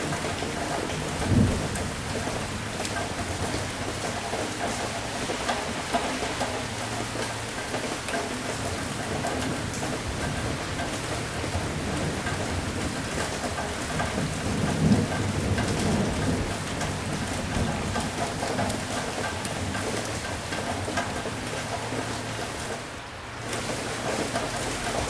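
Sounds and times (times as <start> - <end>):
low thunder rumble: 0.0 - 3.9, 14.0 - 20.1
steady rain falling: 0.0 - 25.0.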